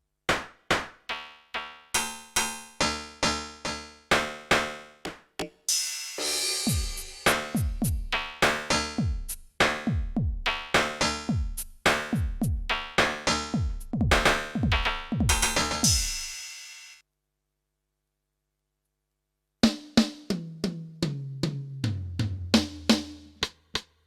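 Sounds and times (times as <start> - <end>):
cymbal crash ringing: 5.7 - 7.8
electronic drum kit pattern: 6.2 - 16.9.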